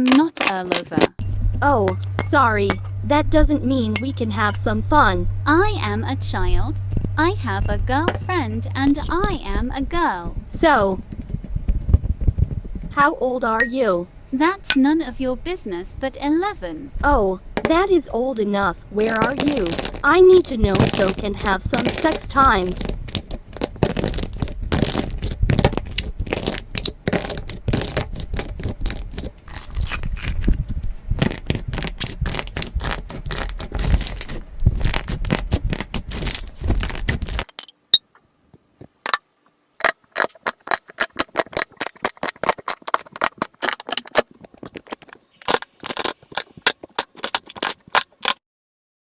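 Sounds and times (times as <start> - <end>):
low rumble: 1.1 - 26.6
slime crackling and clicking: 19.0 - 30.3, 31.2 - 37.5, 39.8 - 48.4.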